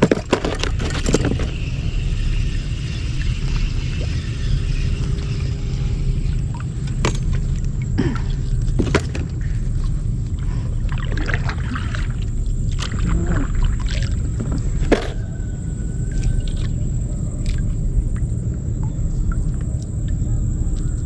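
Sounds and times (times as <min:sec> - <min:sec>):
low boat rumble: 0:00.0 - 0:21.0
sharp knocks and splashes: 0:06.4 - 0:18.2.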